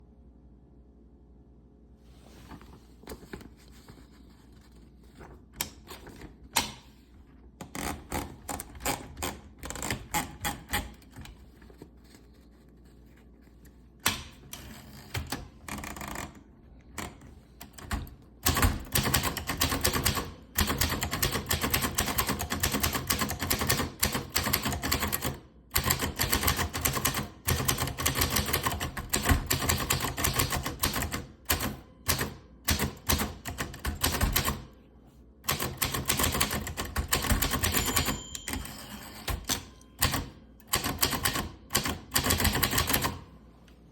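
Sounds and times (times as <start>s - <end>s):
manual typewriter keystrokes: 7.6s - 11.4s, 14.0s - 34.7s, 35.4s - 43.3s.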